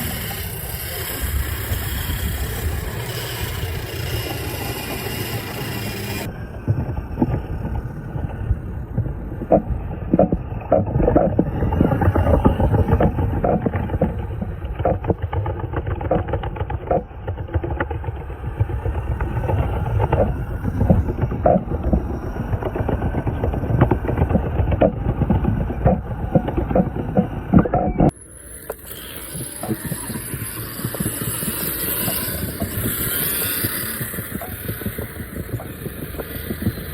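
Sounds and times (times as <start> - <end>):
sharp clatters and knocks: 0.0 - 36.9
wheels rumbling over street: 0.0 - 36.9.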